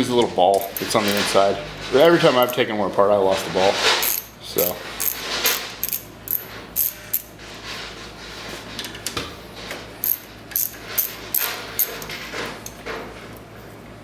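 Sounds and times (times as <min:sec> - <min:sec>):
wrench clicking on metal bolts: 0:00.5 - 0:01.3, 0:02.3 - 0:02.6, 0:04.0 - 0:07.3, 0:10.0 - 0:12.1.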